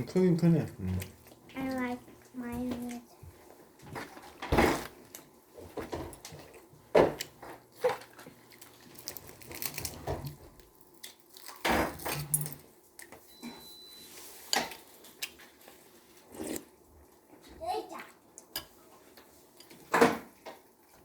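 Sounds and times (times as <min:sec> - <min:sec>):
cutlery and dishes clinking: 0:11.6 - 0:15.5.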